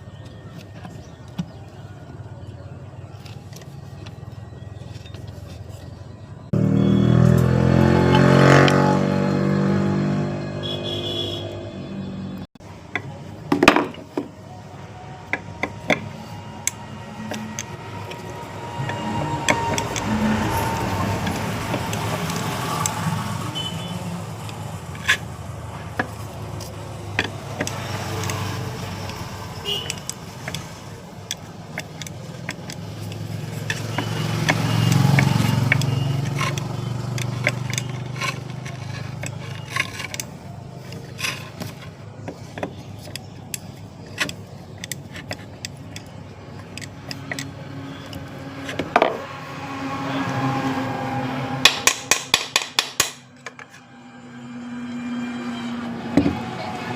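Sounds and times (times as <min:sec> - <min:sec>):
low traffic rumble: 0:00.0 - 0:56.9
vehicle passing: 0:06.3 - 0:12.8, 0:14.7 - 0:52.3, 0:52.9 - 0:56.9
metal parts clicking: 0:24.4 - 0:49.1.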